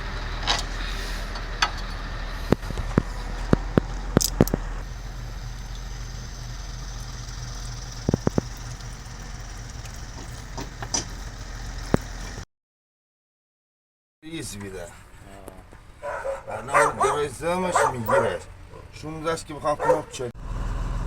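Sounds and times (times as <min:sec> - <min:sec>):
steady low hum: 0:00.0 - 0:12.4.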